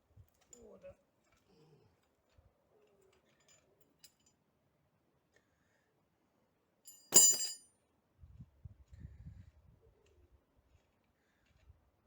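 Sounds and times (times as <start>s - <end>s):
metallic clink: 6.9s - 7.6s.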